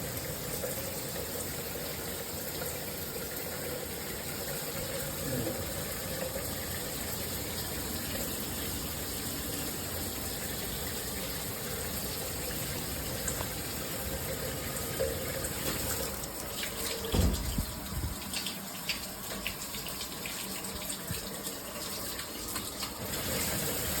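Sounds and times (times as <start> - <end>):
low thump: 17.1 - 17.7.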